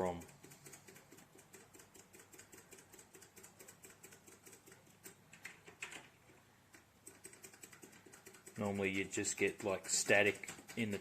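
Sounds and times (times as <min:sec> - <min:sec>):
keyboard keys clicking: 0:00.0 - 0:06.1.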